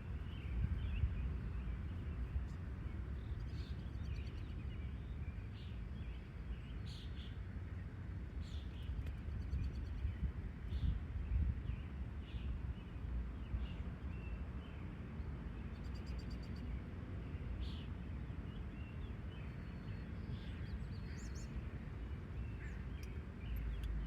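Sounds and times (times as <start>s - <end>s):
steady low rumble: 0.0s - 4.8s.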